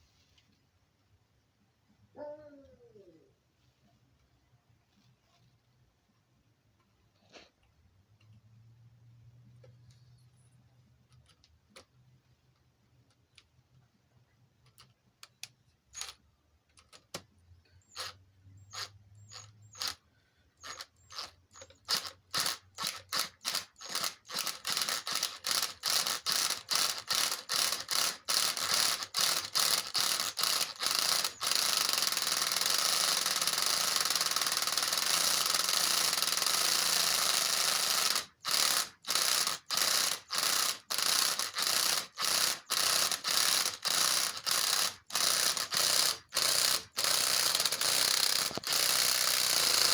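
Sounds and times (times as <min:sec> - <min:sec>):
ratchet clicking: 0:14.7 - 0:16.2, 0:17.9 - 0:20.0, 0:20.6 - 0:49.9.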